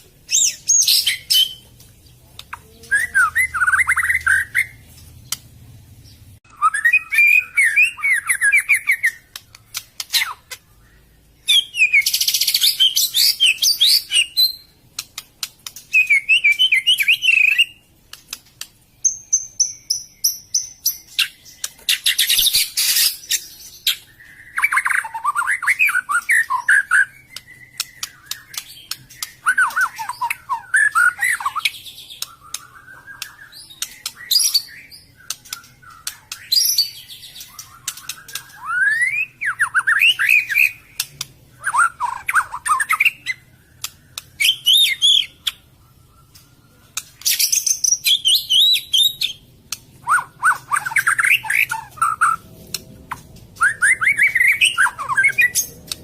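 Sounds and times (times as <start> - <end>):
songbird chattering and whistling: 2.3 - 4.9, 6.1 - 18.4, 19.0 - 56.0.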